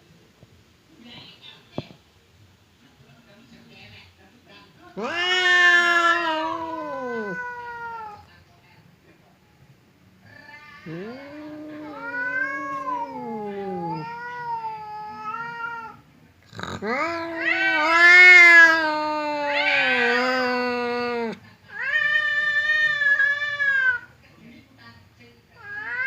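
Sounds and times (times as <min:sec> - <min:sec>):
cats yowling: 0:05.0 - 0:08.2, 0:10.3 - 0:16.0, 0:16.6 - 0:24.1, 0:25.6 - 0:26.0.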